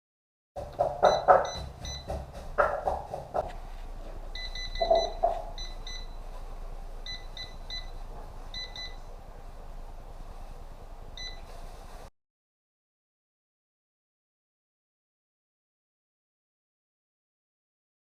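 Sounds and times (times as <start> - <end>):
short high-pitched beeps: 1.0 - 2.2, 4.4 - 6.3, 7.0 - 9.1, 11.2 - 11.5.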